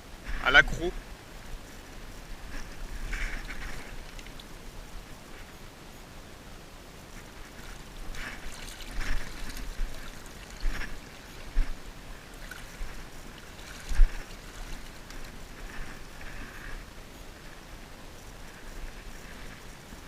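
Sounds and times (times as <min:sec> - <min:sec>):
water splashing and sloshing: 0:01.6 - 0:05.6, 0:07.2 - 0:17.6.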